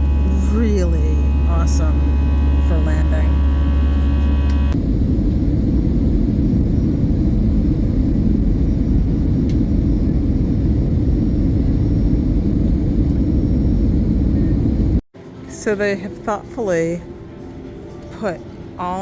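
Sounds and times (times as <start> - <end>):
airliner cabin rumble: 0.0 - 15.0.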